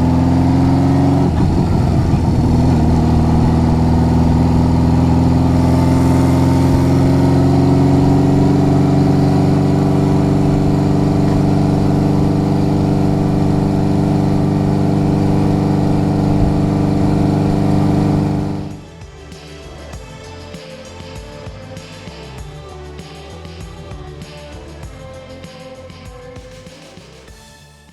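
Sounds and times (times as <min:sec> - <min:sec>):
motorcycle engine running: 0:00.0 - 0:19.3.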